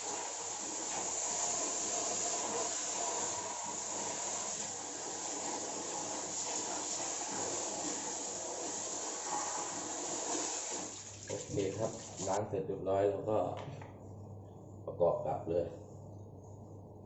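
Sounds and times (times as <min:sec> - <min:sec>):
hose spraying water: 0:00.0 - 0:12.4.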